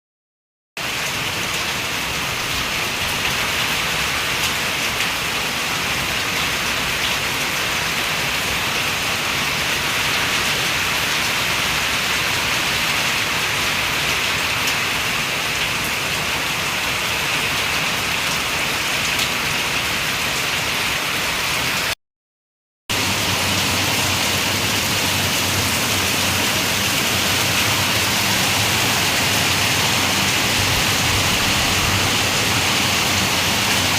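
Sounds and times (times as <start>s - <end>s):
heavy rain pouring: 0.8s - 22.0s, 22.9s - 33.9s.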